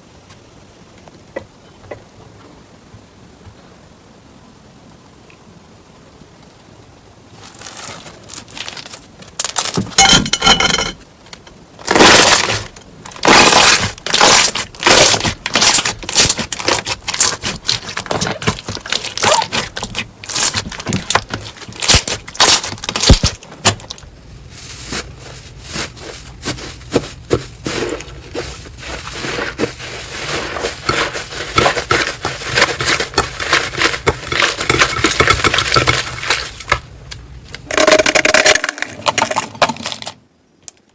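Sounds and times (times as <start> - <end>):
slime crackling and popping: 11.8 - 36.9.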